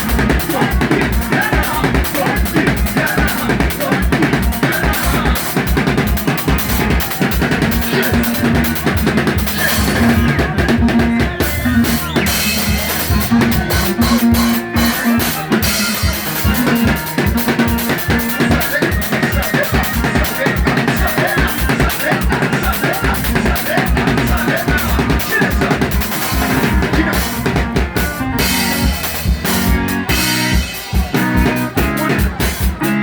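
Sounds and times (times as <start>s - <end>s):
drum kit beat: 0.0s - 33.0s
low melodic line: 5.8s - 18.5s, 25.8s - 33.0s.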